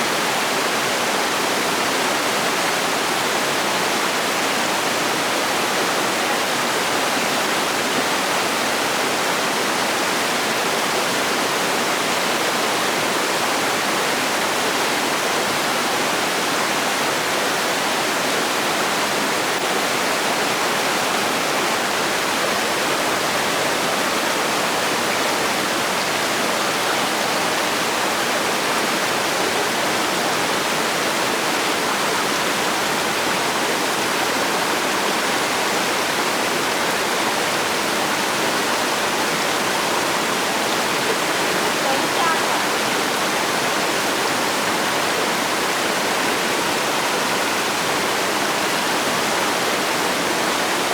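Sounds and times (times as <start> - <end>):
flowing water rushing: 0.0 - 50.9.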